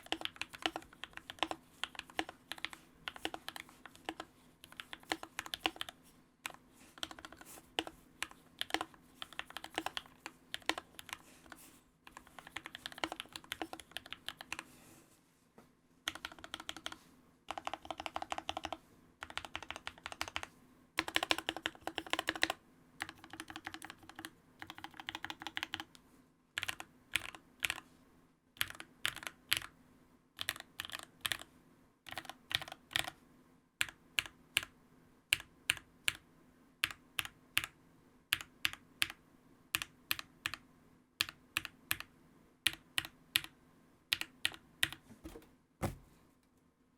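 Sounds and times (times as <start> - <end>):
mechanical keyboard typing: 0.0 - 14.6, 16.1 - 26.0, 26.6 - 27.8, 28.6 - 29.7, 30.4 - 31.5, 32.1 - 33.2, 36.8 - 40.6, 41.2 - 45.0.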